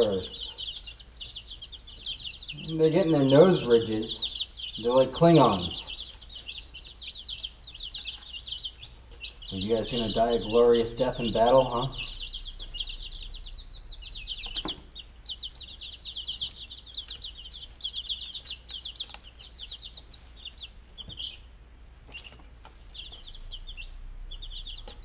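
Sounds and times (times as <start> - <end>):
chicks peeping: 0.0 - 25.0.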